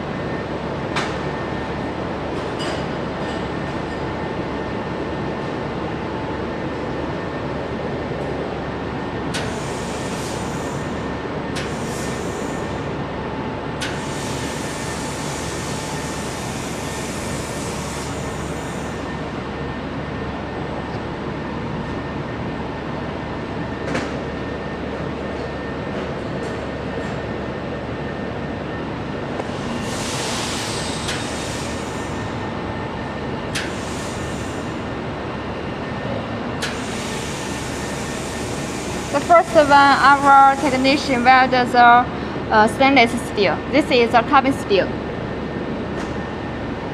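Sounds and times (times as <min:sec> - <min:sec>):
machine and water chiller humming: 0:00.0 - 0:46.9
welding hiss: 0:36.7 - 0:39.7.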